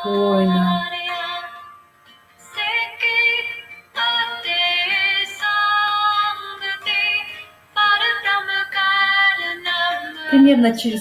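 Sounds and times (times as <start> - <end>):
woman singing slow chant: 0.0 - 1.5, 2.5 - 11.0.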